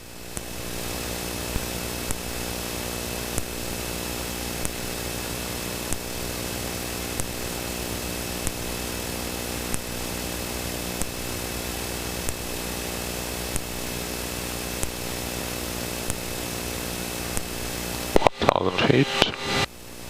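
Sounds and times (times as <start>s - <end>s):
jet engines humming and whining: 18.0s - 19.7s.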